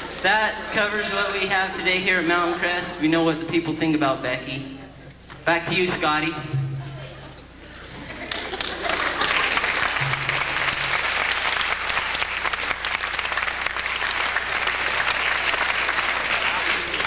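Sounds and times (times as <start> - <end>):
audience applause: 8.1 - 17.0.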